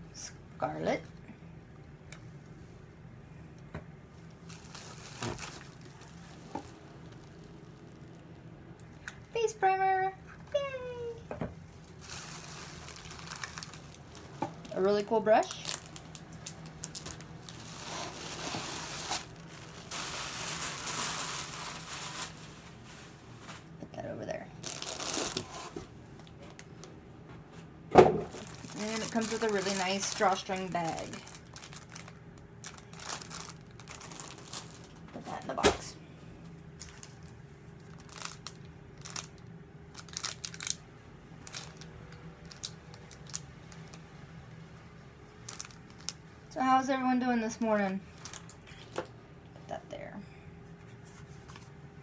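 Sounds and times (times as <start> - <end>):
packaging paper rustling: 4.3 - 8.2, 11.8 - 23.8, 24.6 - 26.9, 28.2 - 35.1, 36.8 - 39.4, 40.0 - 40.8.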